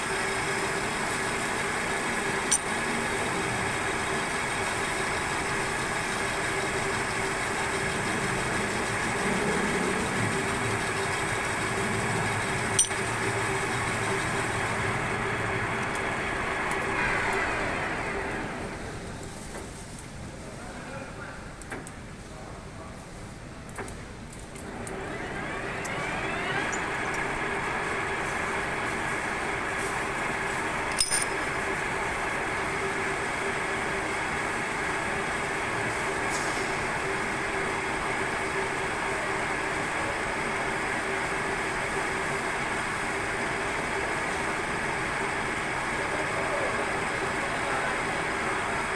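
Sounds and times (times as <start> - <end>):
metal lathe running: 0.0 - 19.1, 24.6 - 48.9
sharp metallic clink: 30.9 - 31.4.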